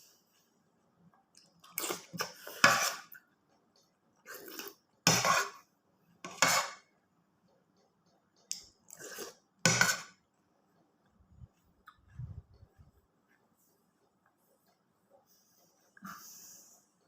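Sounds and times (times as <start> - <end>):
spoon scraping a dish: 1.7 - 3.2, 4.3 - 6.9, 8.8 - 10.2.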